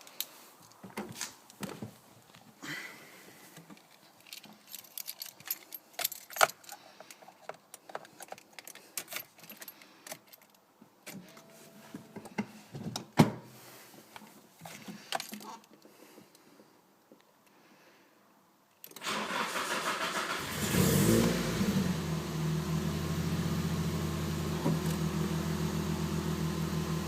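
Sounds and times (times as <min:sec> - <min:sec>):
keys jangling: 0:04.2 - 0:11.4.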